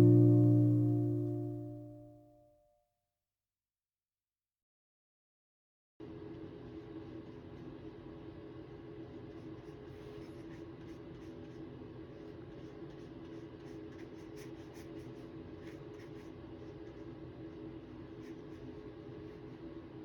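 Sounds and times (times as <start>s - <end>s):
low room hum: 0.0s - 2.1s
paintbrush strokes on paper: 9.0s - 19.9s.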